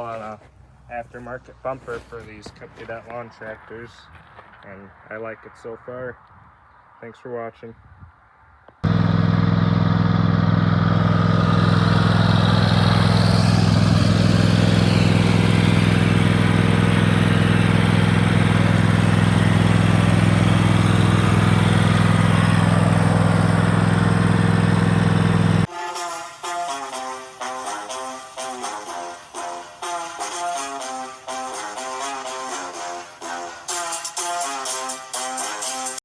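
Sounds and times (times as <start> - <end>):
lawn tractor engine running: 8.8 - 25.7.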